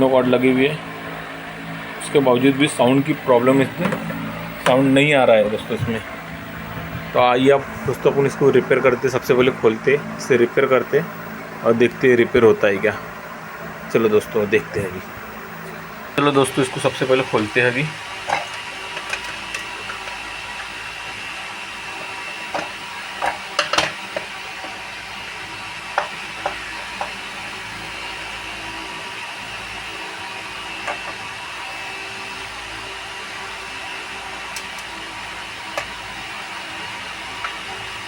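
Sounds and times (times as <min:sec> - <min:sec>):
faint high whine: 0:00.0 - 0:23.2
electrical hum: 0:00.0 - 0:38.0.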